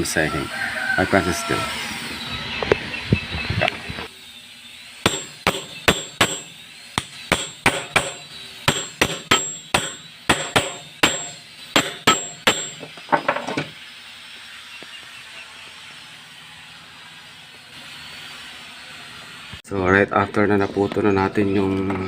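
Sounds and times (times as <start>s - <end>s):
tool striking with metallic ring: 5.0s - 13.7s.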